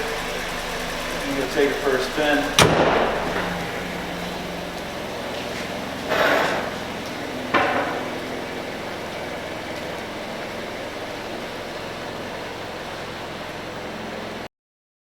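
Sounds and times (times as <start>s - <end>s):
steady hum: 0.0s - 14.5s
car panel slamming shut: 2.6s - 3.6s.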